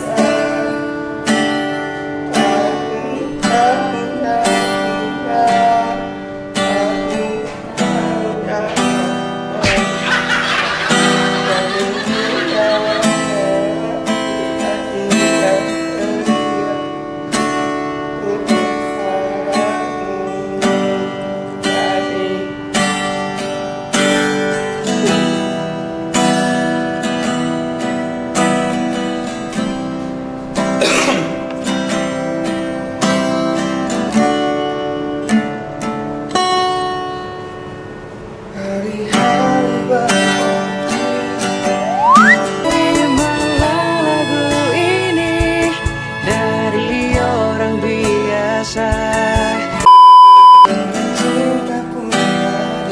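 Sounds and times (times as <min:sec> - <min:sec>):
acoustic guitar strumming: 0:39.1 - 0:52.9.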